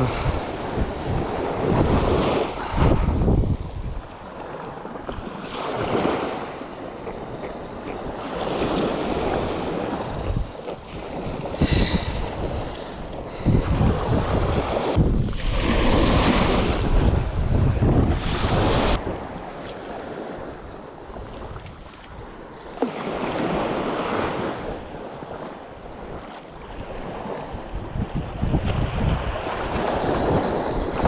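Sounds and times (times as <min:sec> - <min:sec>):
sea waves washing: 0:00.0 - 0:17.1, 0:18.2 - 0:27.8, 0:29.1 - 0:31.0
wind buffeting microphone: 0:00.0 - 0:22.4, 0:23.1 - 0:31.0.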